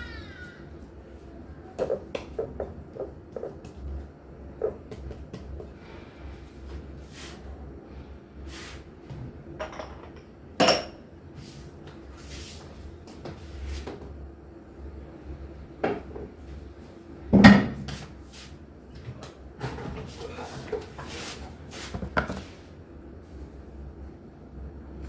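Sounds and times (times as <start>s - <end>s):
kitchen clatter: 9.6s - 11.0s.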